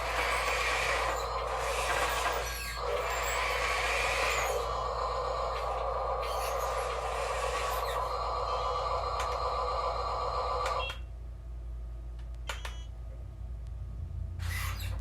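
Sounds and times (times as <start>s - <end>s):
small electric motor running: 0.0s - 10.8s
low steady hum: 0.0s - 15.0s.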